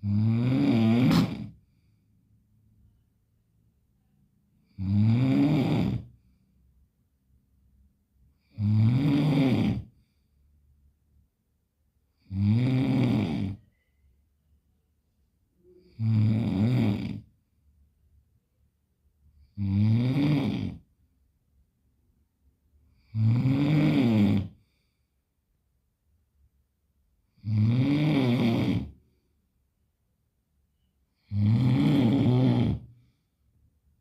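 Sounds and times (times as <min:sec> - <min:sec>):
person snoring loudly: 0:00.0 - 0:01.6, 0:04.6 - 0:06.1, 0:08.4 - 0:10.0, 0:12.2 - 0:13.7, 0:15.8 - 0:17.3, 0:19.6 - 0:20.8, 0:23.0 - 0:24.7, 0:27.4 - 0:29.0, 0:31.2 - 0:32.9.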